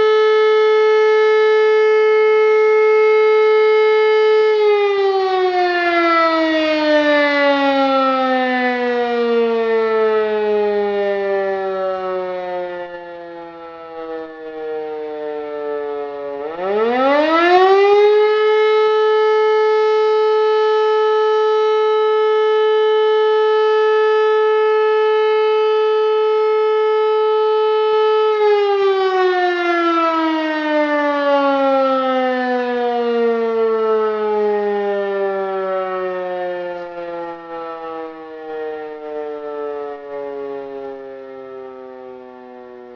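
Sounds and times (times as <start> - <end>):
motor siren wailing: 0.0 - 42.9.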